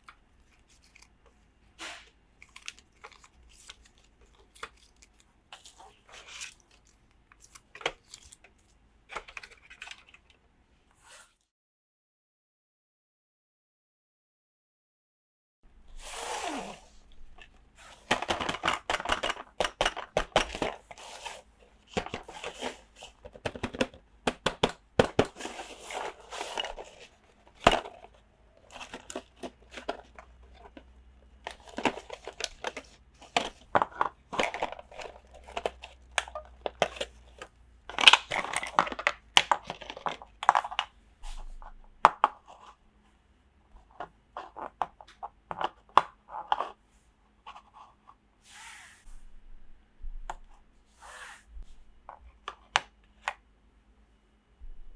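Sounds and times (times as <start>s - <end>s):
packaging crinkling and tearing: 0.1s - 1.2s, 1.8s - 10.2s, 24.4s - 40.8s.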